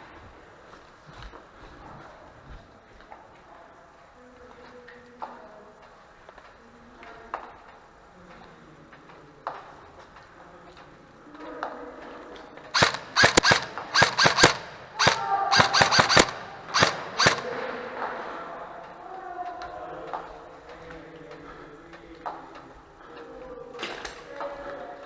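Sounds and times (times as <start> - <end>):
airsoft guns firing: 12.7 - 18.5
single clicks: 12.8 - 17.7.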